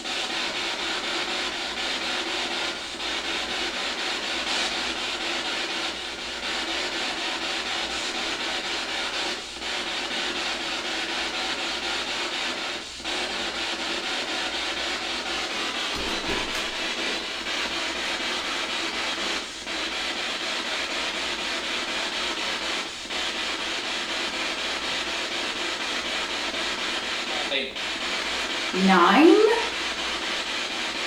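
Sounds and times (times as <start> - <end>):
radio static hiss: 26.3 - 31.0.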